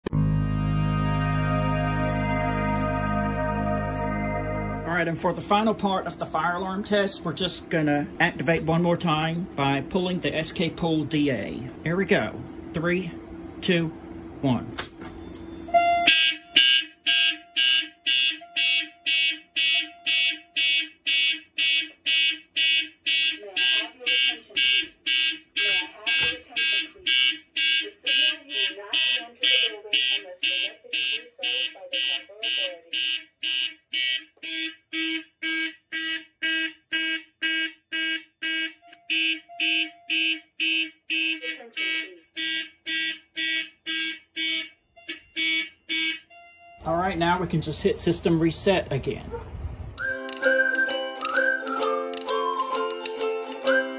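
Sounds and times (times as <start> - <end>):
fire alarm horns pulsing: 0.1 - 5.1, 15.6 - 47.2.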